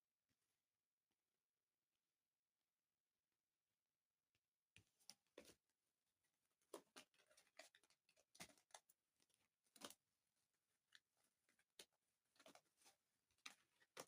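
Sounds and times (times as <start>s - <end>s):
faint small clicks and taps: 6.6s - 10.1s.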